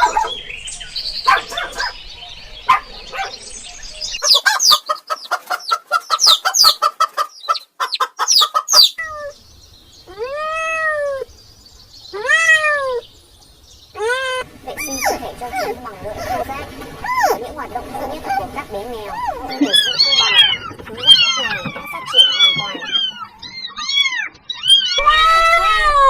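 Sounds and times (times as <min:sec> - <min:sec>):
cats meowing: 0:08.2 - 0:09.4, 0:10.0 - 0:11.3, 0:12.1 - 0:13.1, 0:14.0 - 0:26.0.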